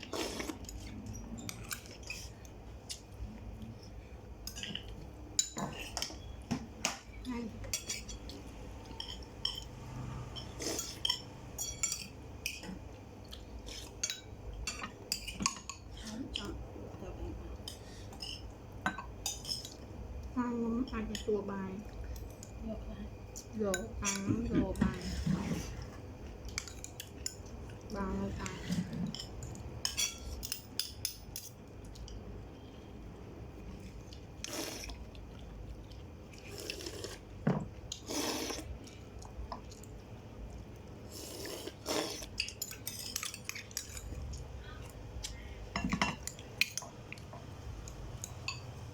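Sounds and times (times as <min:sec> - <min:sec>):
cutlery clinking against dishes: 0:42.4 - 0:44.1.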